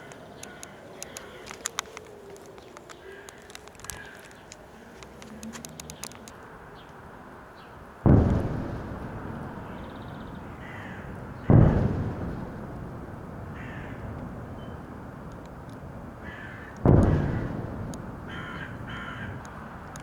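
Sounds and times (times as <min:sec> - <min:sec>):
heavy explosion booms: 0:08.0 - 0:15.3, 0:15.9 - 0:19.9.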